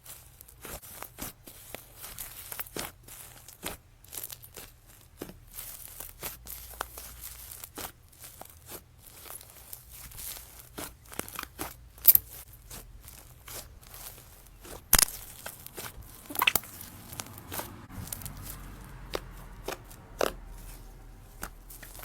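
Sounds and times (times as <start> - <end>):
slime crackling and popping: 2.4 - 16.8.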